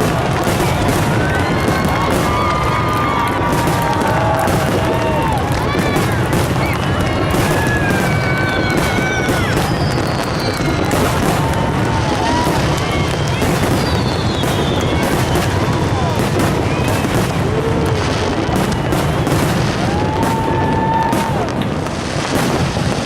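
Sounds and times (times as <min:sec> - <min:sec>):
fireworks booming and crackling: 0:00.0 - 0:23.0
fireworks whistling: 0:00.0 - 0:23.0.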